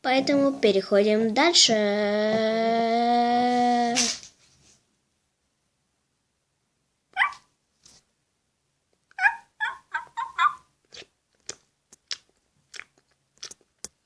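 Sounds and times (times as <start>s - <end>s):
small dog yapping: 7.1s - 7.5s, 9.1s - 10.7s.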